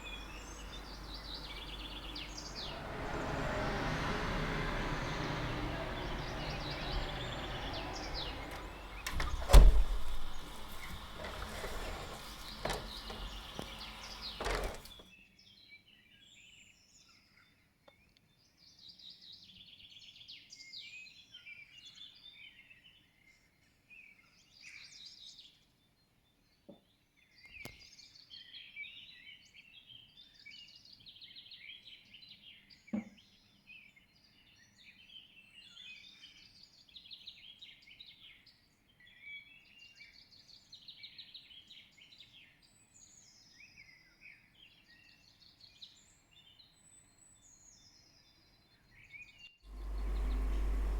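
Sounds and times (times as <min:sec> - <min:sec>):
small birds chirping and trilling: 0:00.0 - 0:15.0
soft knocks: 0:00.0 - 0:15.0.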